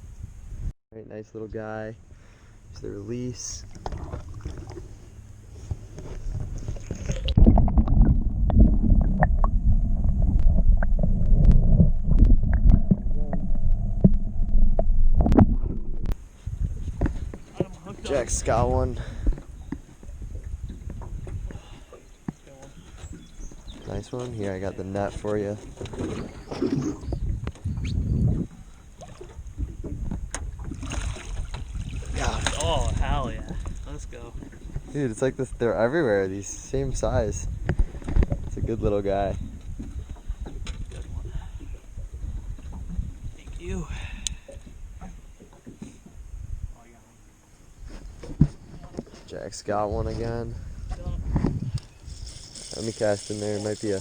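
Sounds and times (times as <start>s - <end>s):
low rumbling on microphone: 1.9s - 54.0s
water lapping against boat: 2.0s - 54.0s
low rumble: 2.6s - 21.6s.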